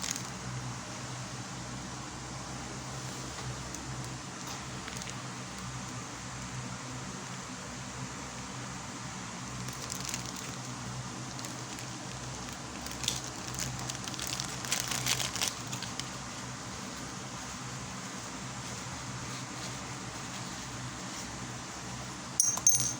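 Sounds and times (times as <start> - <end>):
packaging crinkling: 0.0 - 0.4, 3.5 - 5.2, 9.6 - 16.8
steady background hum: 0.0 - 22.9.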